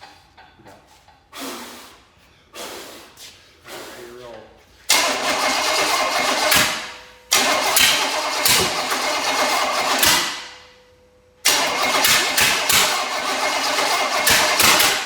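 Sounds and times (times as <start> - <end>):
engine catching with sharp pops: 4.9 - 10.6, 11.4 - 15.0
engine cranking on starter: 4.9 - 10.7, 11.4 - 15.0.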